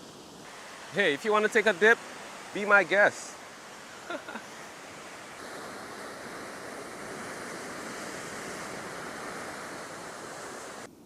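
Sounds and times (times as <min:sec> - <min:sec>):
ocean surf washing: 0:00.0 - 0:11.0.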